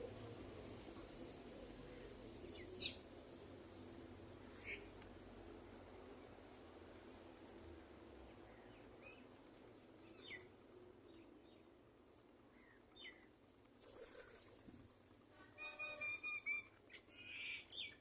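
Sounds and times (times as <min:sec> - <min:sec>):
small bird chirping: 0:10.1 - 0:10.6.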